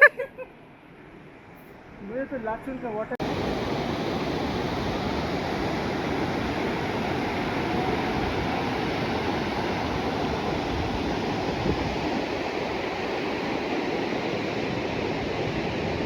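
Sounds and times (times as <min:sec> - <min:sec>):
fast river rushing: 0:03.2 - 0:16.0.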